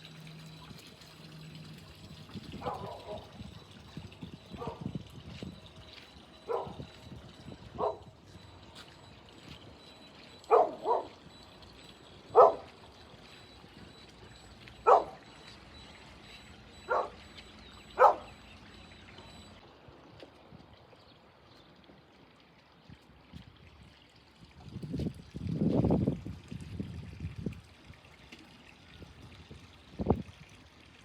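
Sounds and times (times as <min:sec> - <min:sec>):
animal barking: 0:02.6 - 0:03.4, 0:04.5 - 0:04.9, 0:06.4 - 0:06.9, 0:07.7 - 0:08.1, 0:10.4 - 0:11.2, 0:12.3 - 0:12.7, 0:14.8 - 0:15.4, 0:16.7 - 0:17.2, 0:17.9 - 0:18.4.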